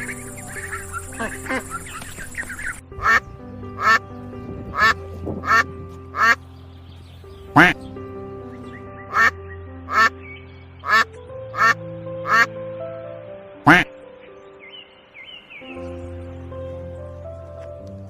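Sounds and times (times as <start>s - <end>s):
background music with sustained tones: 0.0s - 18.0s
duck quacking: 2.6s - 3.2s, 3.8s - 4.0s, 4.8s - 6.4s, 7.5s - 7.8s, 9.1s - 9.3s, 9.9s - 10.1s, 10.8s - 12.5s, 13.7s - 13.9s.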